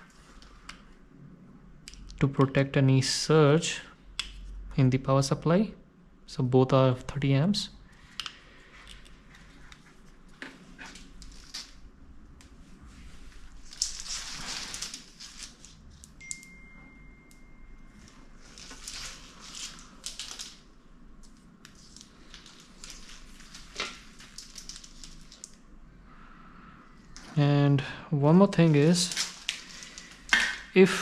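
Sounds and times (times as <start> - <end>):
plastic wires rustling and crinkling: 8.0 - 16.2, 17.9 - 25.8, 28.4 - 30.8.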